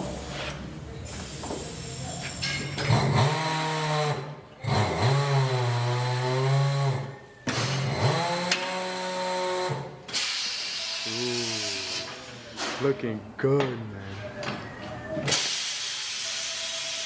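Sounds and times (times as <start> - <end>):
power tool running: 7.6 - 12.1
loud hiss of air: 10.1 - 12.1, 15.3 - 17.0.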